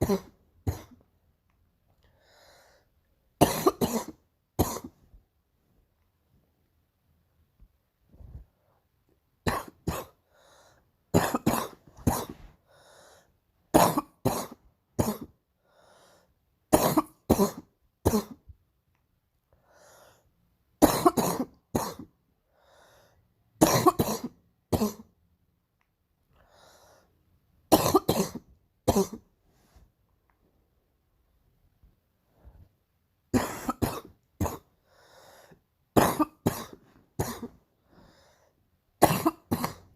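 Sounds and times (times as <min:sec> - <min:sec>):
girl coughing: 0:00.0 - 0:01.0, 0:03.4 - 0:05.0, 0:09.5 - 0:10.2, 0:11.1 - 0:12.5, 0:13.7 - 0:15.4, 0:16.7 - 0:18.4, 0:20.8 - 0:22.1, 0:23.6 - 0:25.1, 0:27.7 - 0:29.3, 0:33.3 - 0:34.7, 0:36.0 - 0:37.6, 0:39.0 - 0:39.9
faint in-breaths: 0:02.0 - 0:03.1, 0:10.2 - 0:11.0, 0:12.4 - 0:13.5, 0:15.5 - 0:16.5, 0:19.5 - 0:20.4, 0:22.4 - 0:23.4, 0:26.3 - 0:27.3, 0:32.2 - 0:32.8, 0:34.7 - 0:35.8, 0:37.7 - 0:38.7.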